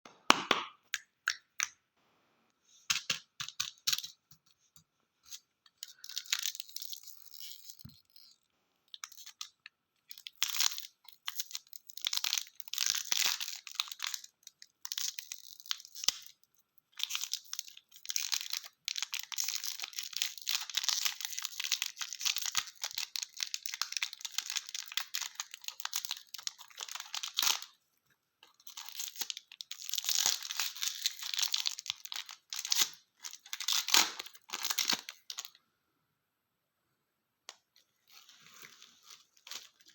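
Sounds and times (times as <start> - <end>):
plastic wrappers crinkling and tearing: 5.8 - 27.8, 28.4 - 35.6, 38.1 - 39.9.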